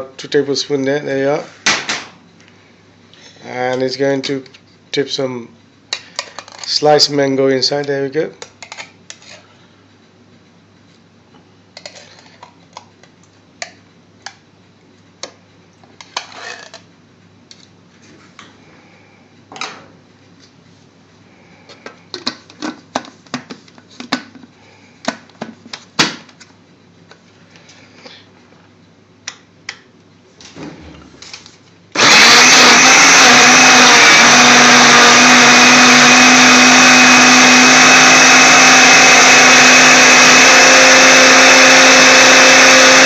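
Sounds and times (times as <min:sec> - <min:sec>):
electric blender running: 0:32.0 - 0:43.0.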